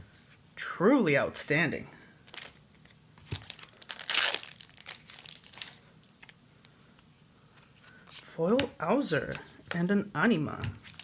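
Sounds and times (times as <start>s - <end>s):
foil wrapper crinkling: 2.3s - 2.6s, 3.3s - 6.3s
foil wrapper tearing: 3.4s - 6.2s.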